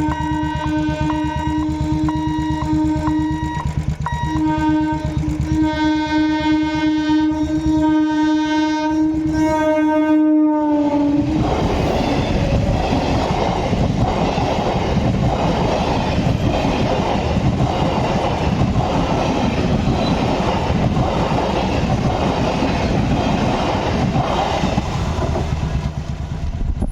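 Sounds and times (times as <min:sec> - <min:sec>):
train wheels clattering past: 0:00.0 - 0:08.1, 0:11.1 - 0:26.9
train horn long blast: 0:00.0 - 0:11.4.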